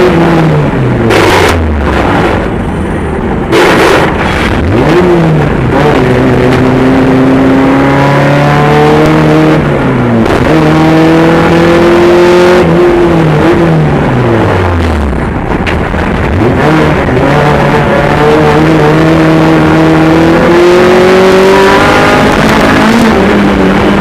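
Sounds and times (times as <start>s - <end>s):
car engine accelerating hard: 0.0s - 24.0s
loud rushing burst: 1.0s - 6.3s.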